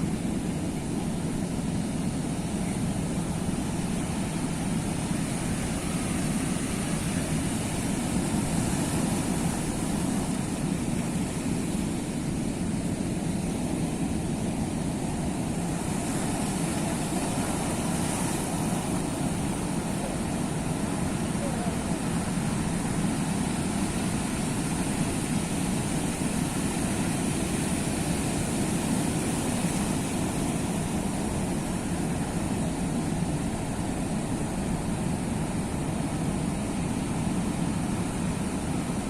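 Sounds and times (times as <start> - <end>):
waves washing ashore: 0.0 - 39.0.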